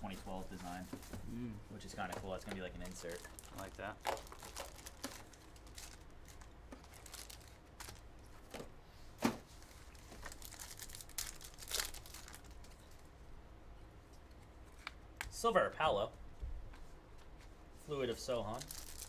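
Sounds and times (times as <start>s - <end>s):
wrappers crinkling and tearing: 2.0s - 8.2s, 9.5s - 13.0s, 18.4s - 19.0s.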